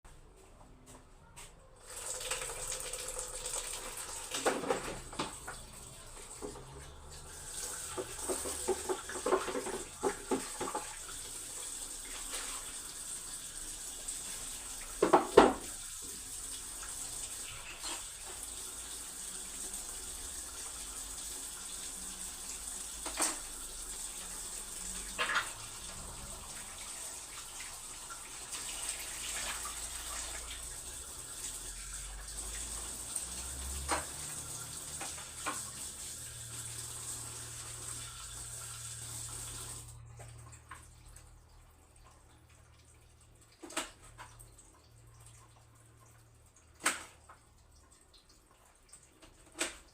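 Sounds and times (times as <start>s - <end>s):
kitchen tap running into sink: 1.8s - 49.9s
clatters of things handled in sink: 4.2s - 5.7s, 7.9s - 11.0s, 14.9s - 15.8s, 23.0s - 23.6s, 25.1s - 25.6s, 43.6s - 44.4s, 49.2s - 49.9s.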